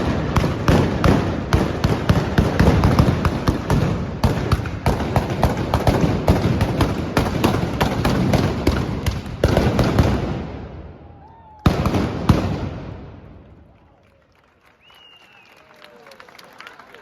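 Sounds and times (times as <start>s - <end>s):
blunderbuss gunfire bangs: 0.0s - 10.7s, 11.7s - 13.2s.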